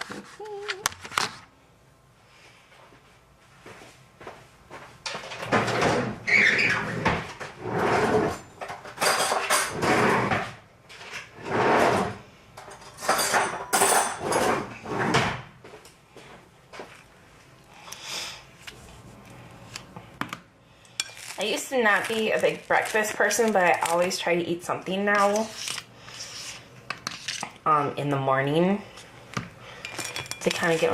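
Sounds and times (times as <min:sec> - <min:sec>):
dishes and cutlery clattering: 0:08.6 - 0:10.0, 0:12.6 - 0:14.7.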